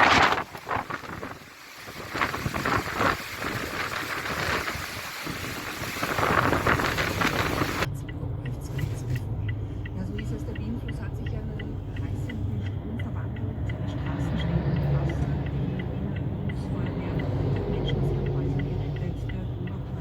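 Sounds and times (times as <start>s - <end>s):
wind gusting across microphone: 0.0s - 7.9s
vehicle running hum: 0.0s - 20.0s.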